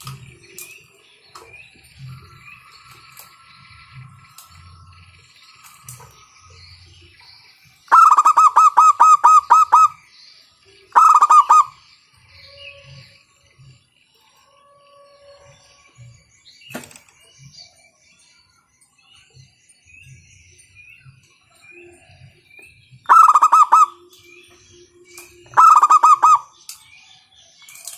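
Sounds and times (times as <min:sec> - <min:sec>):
small birds chirping: 0:00.0 - 0:27.9
dove cooing: 0:07.9 - 0:10.0, 0:11.0 - 0:11.8, 0:23.1 - 0:24.1, 0:25.5 - 0:26.5.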